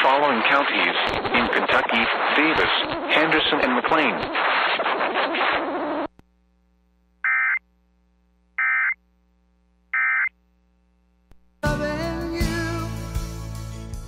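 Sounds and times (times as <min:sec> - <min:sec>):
digital data bursts: 0:00.5 - 0:06.0.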